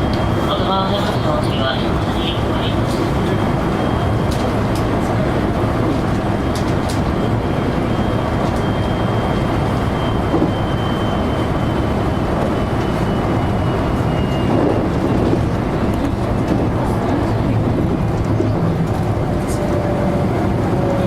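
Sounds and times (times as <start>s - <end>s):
train wheels rumbling on rail: 0.0s - 21.0s.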